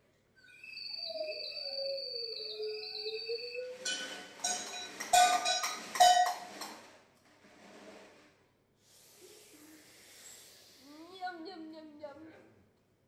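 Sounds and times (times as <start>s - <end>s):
metal objects clattering: 3.8s - 8.1s.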